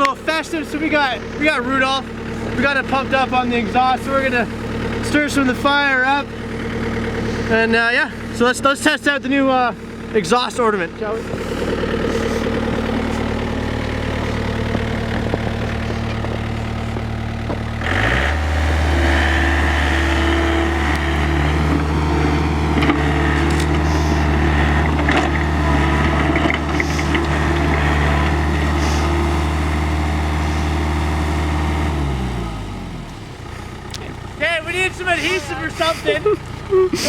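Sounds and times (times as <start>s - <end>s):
excavator diesel engine running: 0.0s - 37.0s.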